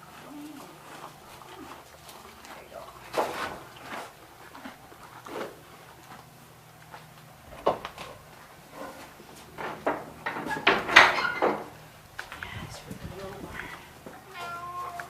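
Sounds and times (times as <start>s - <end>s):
knocks and clunks: 9.6s - 11.8s.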